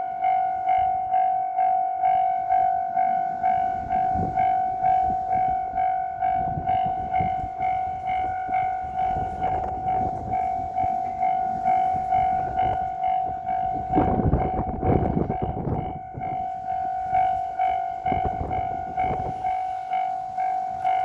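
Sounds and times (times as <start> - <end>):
level crossing warning bell: 0.0 - 21.0
train rumble: 0.0 - 21.0.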